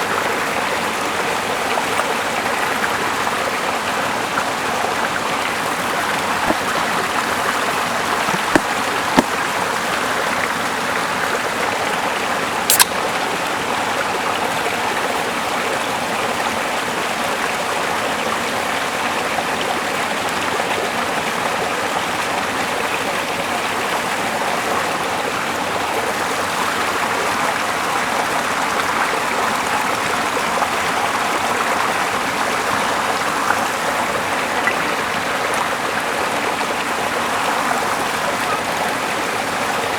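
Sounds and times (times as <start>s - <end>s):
rushing water: 0.0s - 39.9s
brief sharp clicks: 12.7s - 13.0s.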